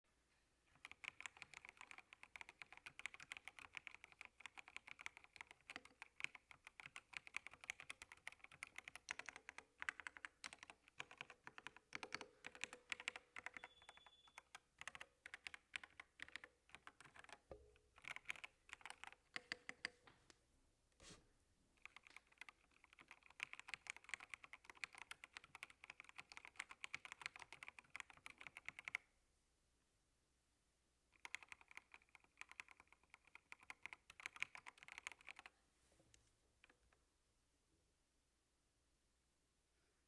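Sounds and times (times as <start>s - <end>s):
typing on computer keyboard: 0.7s - 20.0s, 21.8s - 29.1s, 31.2s - 35.5s.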